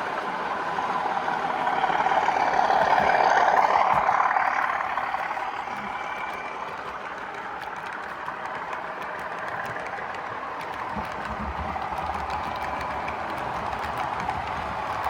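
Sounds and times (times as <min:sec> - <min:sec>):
model train running past: 0:00.0 - 0:15.0.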